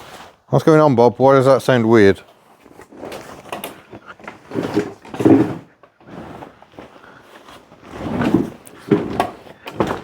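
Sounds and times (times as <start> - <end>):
frame and canvas creaking: 2.3 - 10.0.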